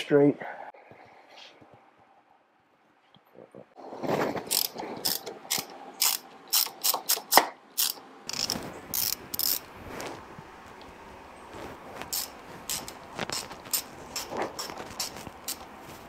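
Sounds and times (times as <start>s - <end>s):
socket ratchet clicking: 4.5s - 9.6s, 12.1s - 14.3s.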